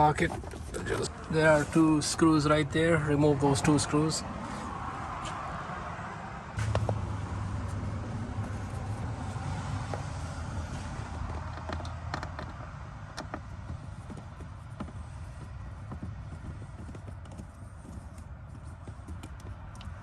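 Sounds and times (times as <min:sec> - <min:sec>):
low hum: 0:06.6 - 0:13.3
hand tools clicking and tapping: 0:11.2 - 0:14.2, 0:17.0 - 0:20.0.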